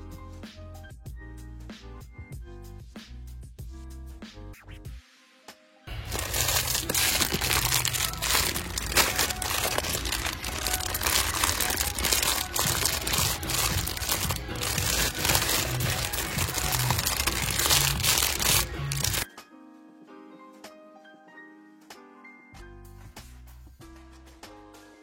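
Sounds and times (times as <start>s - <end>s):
background music with steady bass: 0.0s - 25.0s
dense crinkling and crackling: 5.9s - 19.3s.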